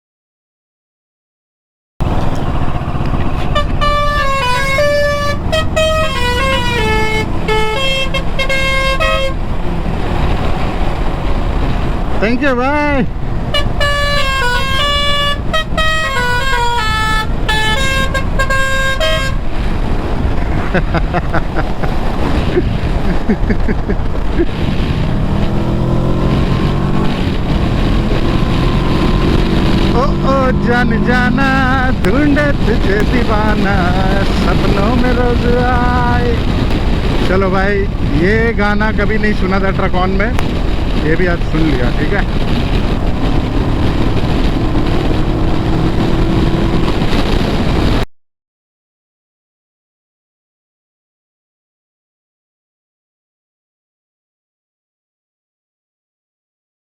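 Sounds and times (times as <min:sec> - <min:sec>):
steady engine drone: 0:02.0 - 0:48.0
wind and road noise: 0:02.0 - 0:48.1.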